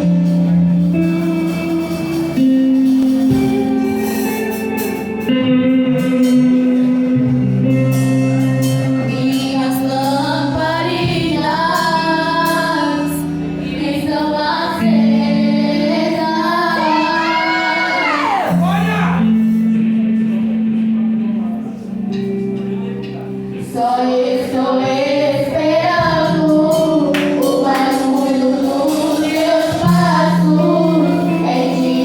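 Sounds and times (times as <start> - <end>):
sustained instrumental chords: 0.0 - 32.0
women singing: 9.0 - 18.6, 23.6 - 32.0.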